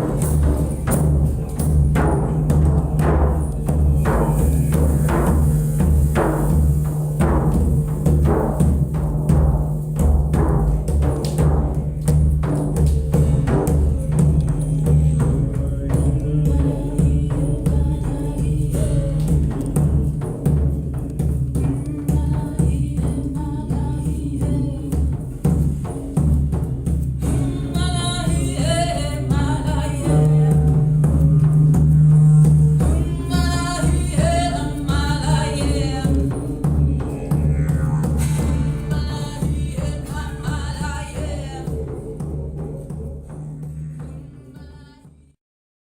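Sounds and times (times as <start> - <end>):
deep drums beating: 0.0 - 45.4
sustained low notes: 27.2 - 45.3.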